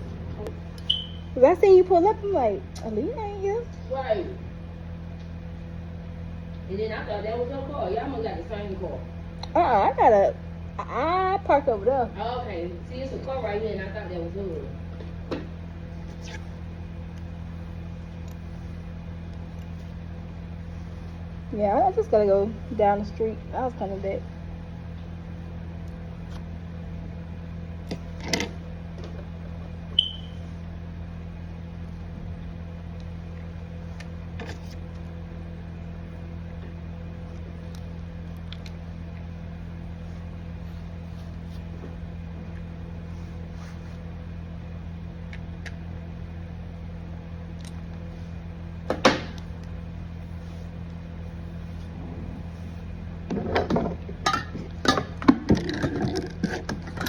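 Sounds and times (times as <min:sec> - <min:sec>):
low electrical hum: 0:00.0 - 0:57.0
high beep: 0:00.9 - 0:01.3, 0:30.0 - 0:30.4.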